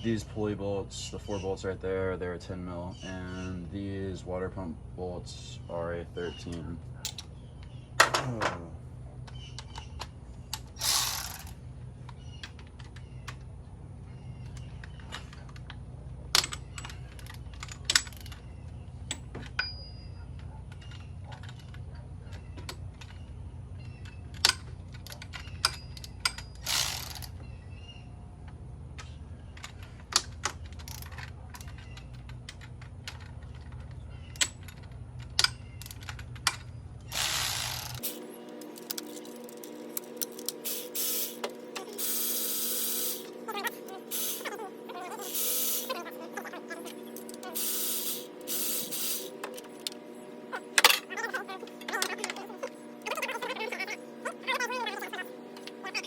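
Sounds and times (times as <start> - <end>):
low steady hum: 0.0 - 56.0
metal clinks: 19.1 - 21.6.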